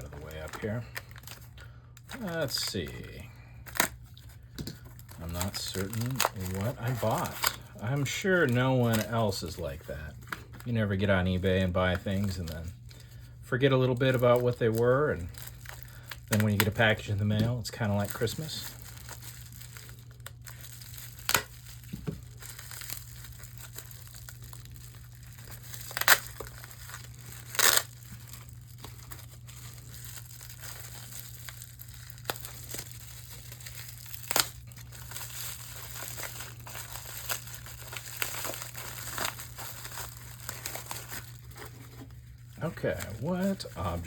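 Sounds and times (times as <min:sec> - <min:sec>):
low steady hum: 0:00.0 - 0:44.0
packing material crinkling: 0:00.0 - 0:44.0
sharp crackles: 0:13.8 - 0:41.4.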